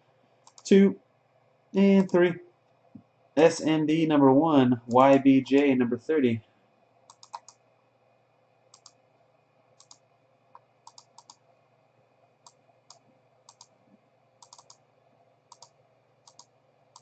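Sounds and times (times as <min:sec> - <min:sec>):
low steady hum: 0:00.0 - 0:17.0
mouse and keyboard clicking: 0:00.4 - 0:00.6, 0:07.1 - 0:07.6, 0:08.7 - 0:09.0, 0:09.8 - 0:10.0, 0:10.6 - 0:11.4, 0:12.4 - 0:13.8, 0:14.4 - 0:14.8, 0:15.5 - 0:17.0.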